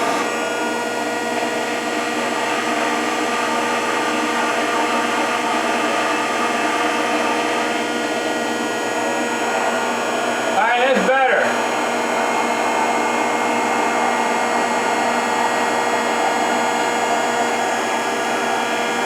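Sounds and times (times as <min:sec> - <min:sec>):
planer machine whirring: 0:00.0 - 0:19.0.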